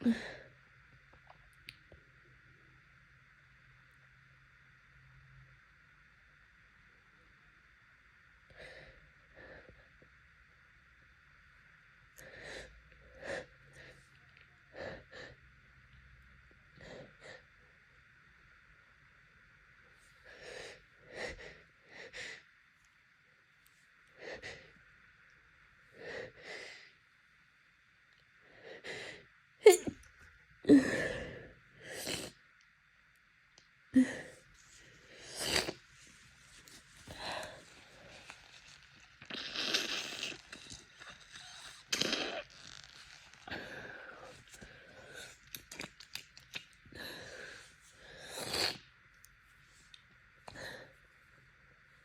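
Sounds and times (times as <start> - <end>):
woman sneezing: 29.6 - 30.0.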